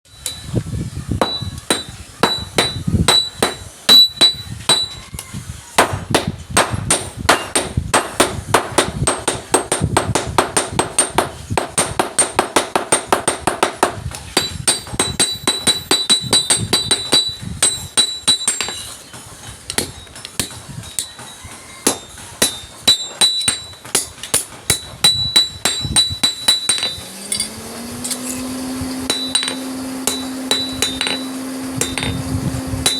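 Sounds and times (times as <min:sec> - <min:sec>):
hammer on metal anvil ringing: 0:01.2 - 0:05.0, 0:06.6 - 0:18.9, 0:21.9 - 0:28.3, 0:29.1 - 0:32.2.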